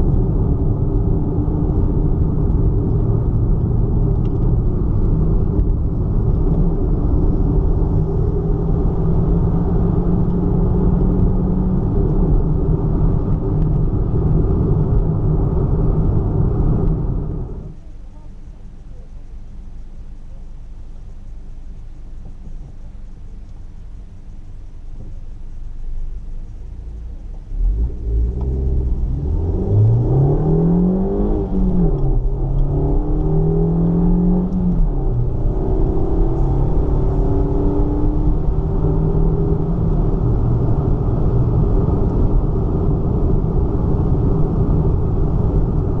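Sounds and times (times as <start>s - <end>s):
car engine accelerating: 0.0s - 46.0s
low road rumble: 0.0s - 46.0s.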